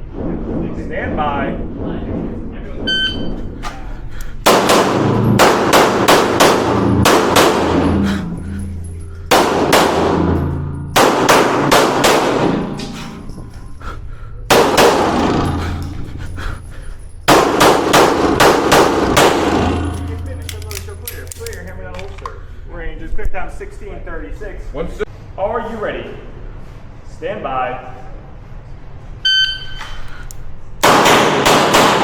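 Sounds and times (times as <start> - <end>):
pistol shots ringing indoors: 4.4 - 13.4, 14.5 - 16.0, 17.3 - 21.7, 30.8 - 32.0.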